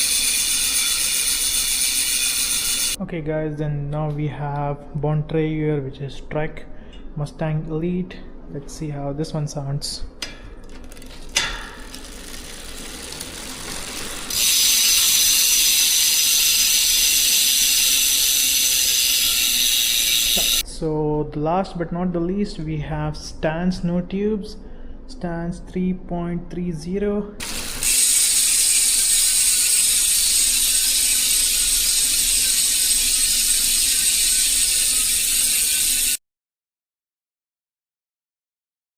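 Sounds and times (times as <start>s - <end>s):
bicycle freehub ratcheting buzz: 0.0s - 3.0s, 10.6s - 20.6s, 27.4s - 36.2s.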